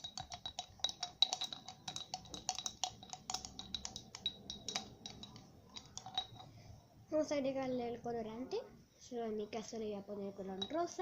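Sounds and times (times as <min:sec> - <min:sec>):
utensil clinking against bowl: 0:00.0 - 0:06.6, 0:10.6 - 0:11.0
utensil stirring glue in a bowl: 0:00.0 - 0:06.6, 0:10.6 - 0:11.0.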